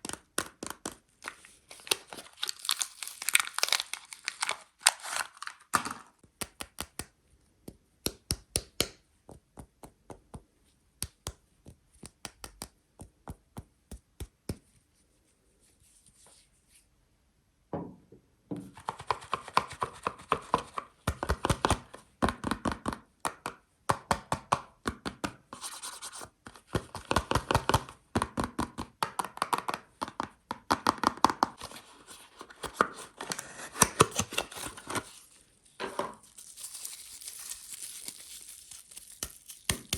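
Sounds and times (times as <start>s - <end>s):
packaging scratching and crinkling: 1.2s - 5.7s, 31.7s - 35.5s, 36.2s - 39.9s
sharp taps and clicks: 6.4s - 14.6s.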